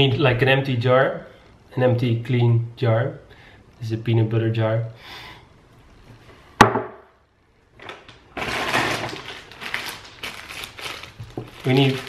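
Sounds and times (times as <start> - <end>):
packaging rustling: 7.8 - 12.0.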